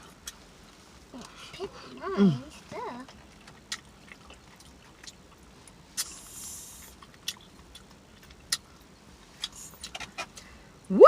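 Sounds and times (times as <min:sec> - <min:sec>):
person chewing and smacking food: 0:00.0 - 0:01.8, 0:03.1 - 0:10.6
sharp wet clicks: 0:03.2 - 0:06.2, 0:06.8 - 0:10.5.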